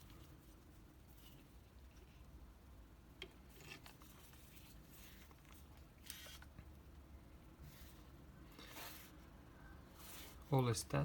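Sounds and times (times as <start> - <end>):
scratchy rustle: 9.9 - 10.6.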